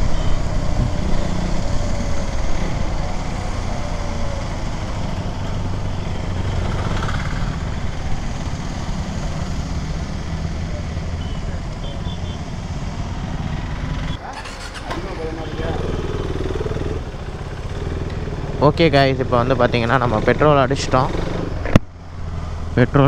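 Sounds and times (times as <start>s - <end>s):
motorcycle engine running: 0.0s - 14.7s, 15.3s - 21.5s.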